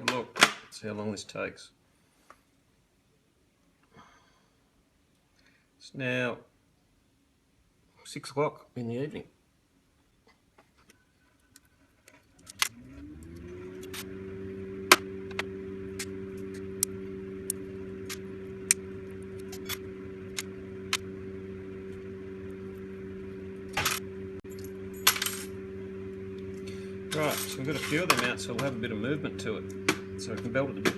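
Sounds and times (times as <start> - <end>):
small electric motor running: 12.3 - 30.9.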